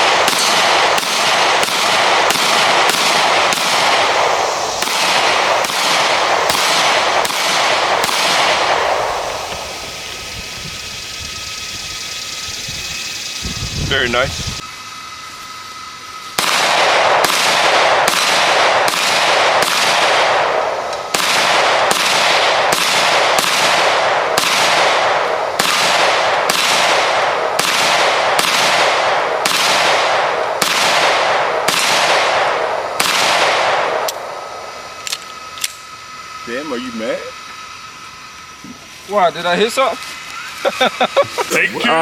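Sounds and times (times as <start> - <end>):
gunshots with ringing echo: 0.0 - 9.8.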